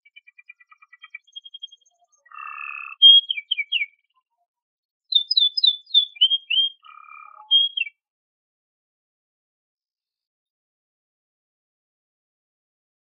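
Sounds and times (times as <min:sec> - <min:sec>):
canary singing: 0:00.1 - 0:04.1, 0:05.1 - 0:08.0.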